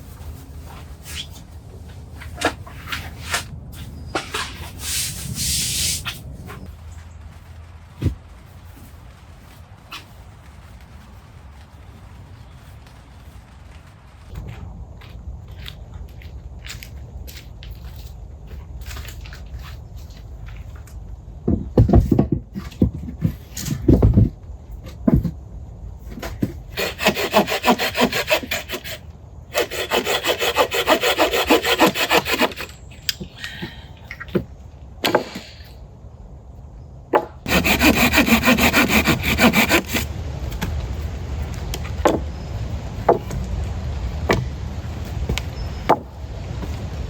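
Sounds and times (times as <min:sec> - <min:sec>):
wood knocking and clattering: 0:21.4 - 0:25.4
hand saw cutting wood: 0:26.7 - 0:32.8, 0:37.5 - 0:40.1.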